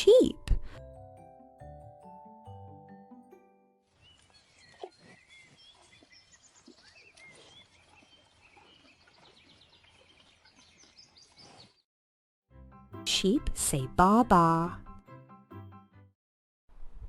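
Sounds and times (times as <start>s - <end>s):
small birds chirping: 3.9s - 11.8s.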